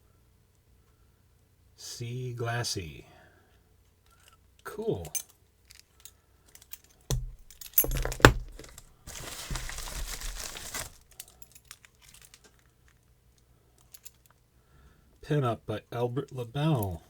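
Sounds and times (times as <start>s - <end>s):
knocks of objects set down: 7.1s - 11.0s
packaging crinkling: 7.1s - 12.7s.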